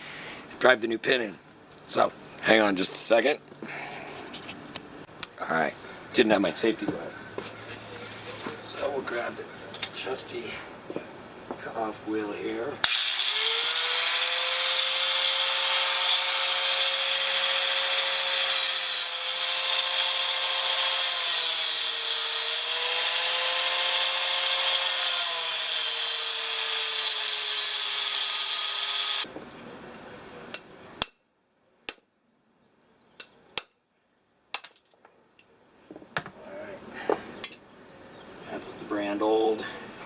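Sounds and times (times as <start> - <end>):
cut-off wheel grinding metal: 12.8 - 29.2.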